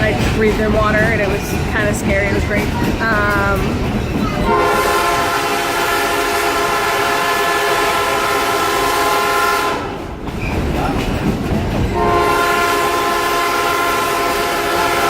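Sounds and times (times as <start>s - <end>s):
train horn long chord: 4.5s - 10.0s, 12.0s - 15.0s.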